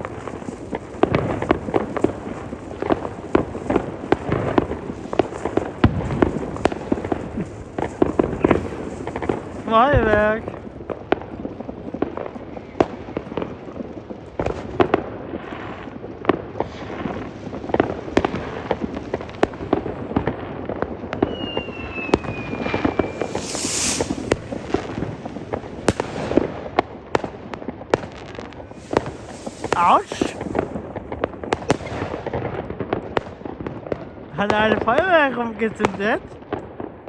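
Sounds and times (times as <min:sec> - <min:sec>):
firecrackers banging: 0:00.0 - 0:12.2, 0:21.2 - 0:36.5
loud hissing burst: 0:08.2 - 0:09.4, 0:23.0 - 0:24.6, 0:28.7 - 0:30.6
rocket falling whistle: 0:21.2 - 0:24.6.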